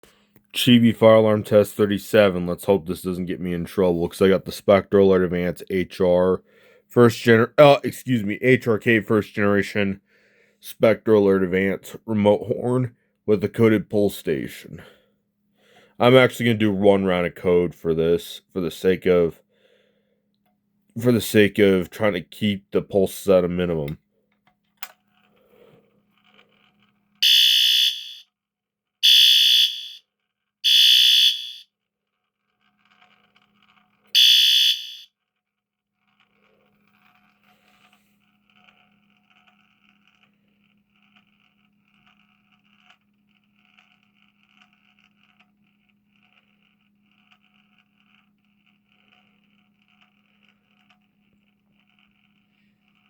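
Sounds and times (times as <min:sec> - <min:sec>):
faint steady hum: 0:00.1 - 0:28.2
fire alarm horn blasts: 0:27.2 - 0:28.3, 0:29.0 - 0:30.0, 0:30.6 - 0:31.7, 0:34.2 - 0:35.1.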